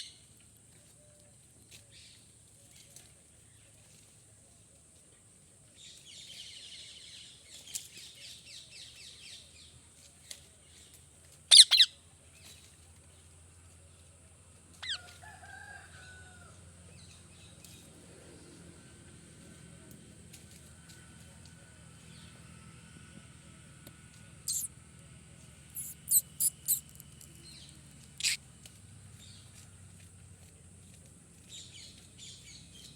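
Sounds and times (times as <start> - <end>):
parrot chattering and screeching: 11.5 - 11.9, 24.5 - 24.7, 25.8 - 27.0, 28.2 - 28.4.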